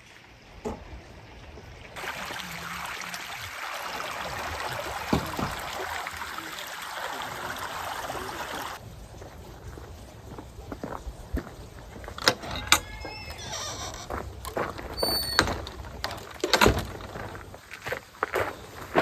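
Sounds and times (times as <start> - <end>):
rushing mountain stream: 0.0 - 8.8.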